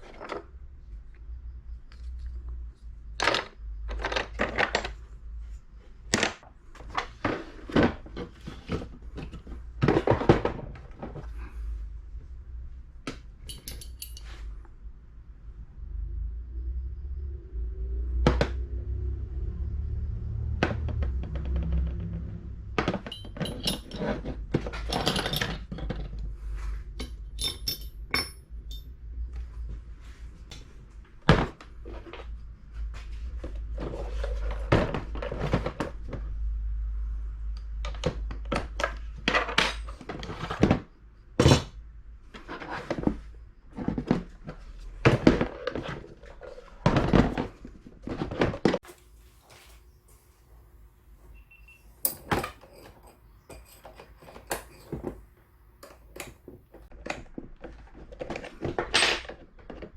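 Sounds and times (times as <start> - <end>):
hard objects knocking and clattering: 20.5 - 26.3, 42.8 - 48.9, 52.0 - 55.2.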